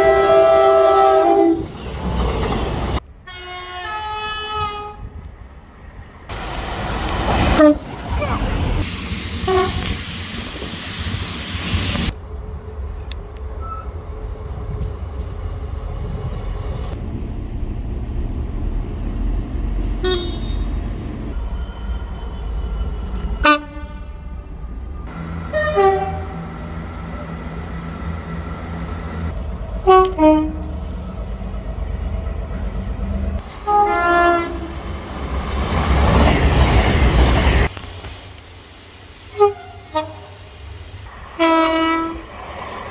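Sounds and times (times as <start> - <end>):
train horn blasts: 0.0 - 1.7, 3.3 - 5.1, 9.5 - 10.0, 20.0 - 24.6, 25.4 - 27.3, 29.8 - 30.9, 33.6 - 34.8, 39.3 - 40.3, 41.4 - 42.2
train rumbling past: 0.0 - 42.9
train rushing past close: 0.0 - 42.9.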